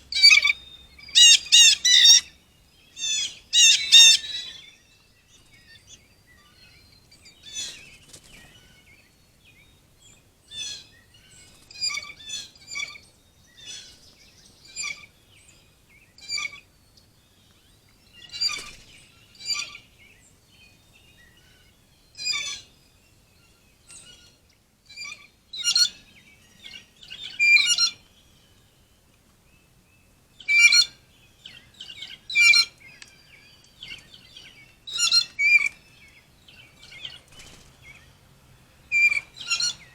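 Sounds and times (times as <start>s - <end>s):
birds chirping: 0.0s - 4.7s, 29.6s - 39.9s.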